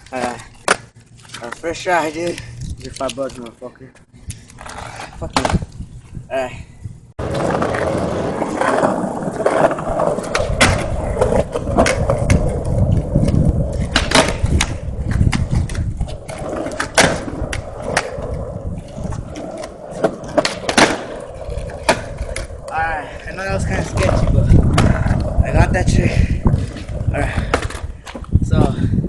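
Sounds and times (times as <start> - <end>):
skateboard wheels rolling on pavement: 0.0 - 6.2, 7.2 - 29.0
skateboard clacking on ground: 7.2 - 22.8, 23.6 - 28.3.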